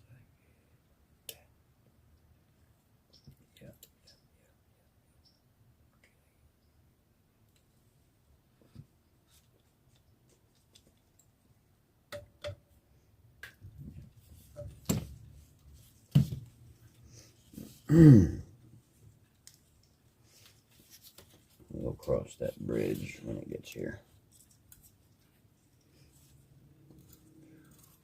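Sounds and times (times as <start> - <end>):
person grunting: 17.6 - 18.5.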